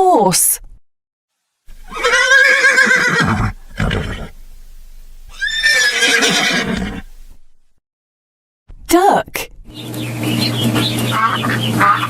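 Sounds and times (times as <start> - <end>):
horse whinnying: 1.7 - 7.5.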